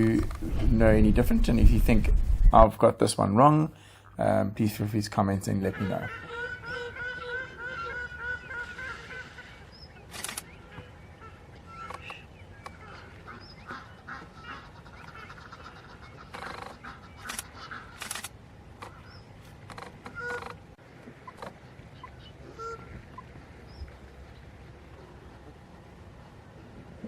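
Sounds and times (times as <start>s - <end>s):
wild birds calling: 5.5s - 27.0s.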